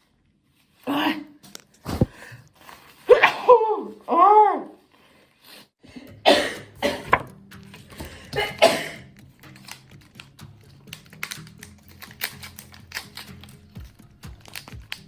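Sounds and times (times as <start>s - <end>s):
woman sneezing: 3.1s - 4.6s, 8.3s - 9.0s
music with clicking beat: 6.1s - 15.0s.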